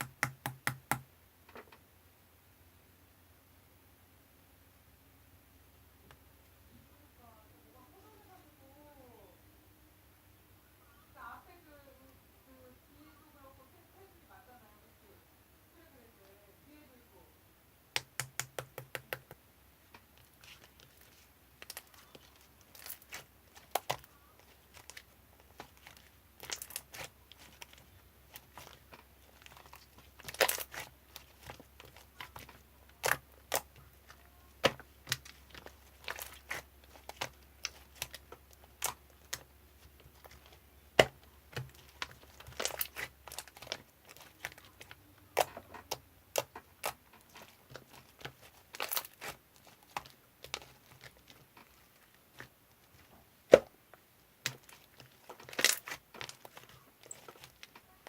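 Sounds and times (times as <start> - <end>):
faint low hum: 0.0 - 58.0
crinkling handling noises: 19.8 - 58.0.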